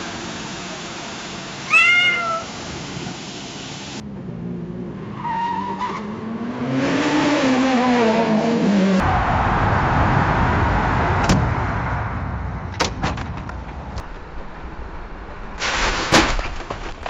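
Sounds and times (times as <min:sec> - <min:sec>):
car engine revving: 0:04.0 - 0:12.8
car tyres screeching: 0:04.9 - 0:12.2
steady rushing noise: 0:09.0 - 0:16.1.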